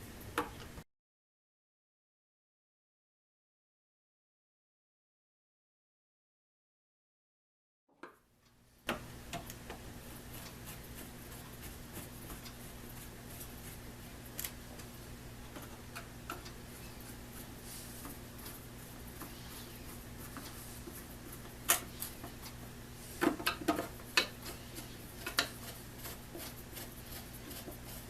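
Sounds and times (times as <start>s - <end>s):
low electrical hum: 0.0s - 0.8s, 8.0s - 28.0s.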